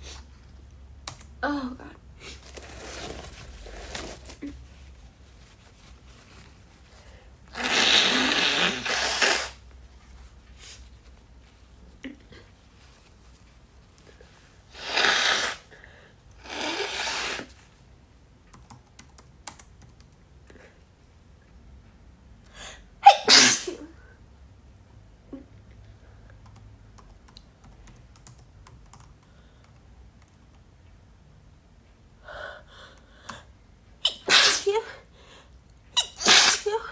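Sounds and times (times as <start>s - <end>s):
woman sneezing: 7.6s - 9.6s, 14.8s - 15.7s, 23.0s - 24.0s, 34.0s - 35.0s, 36.0s - 36.9s.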